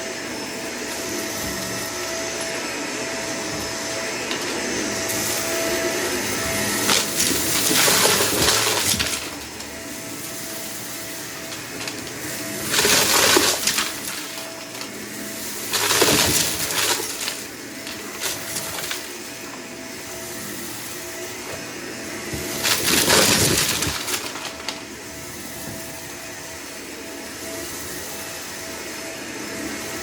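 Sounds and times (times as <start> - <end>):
vacuum cleaner running: 0.0 - 30.0
debris rattling in vacuum: 1.1 - 19.7, 22.2 - 26.0.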